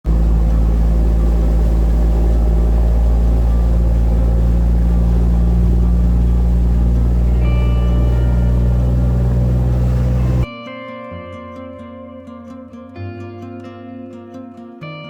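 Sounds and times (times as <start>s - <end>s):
boat engine droning: 0.0s - 10.5s.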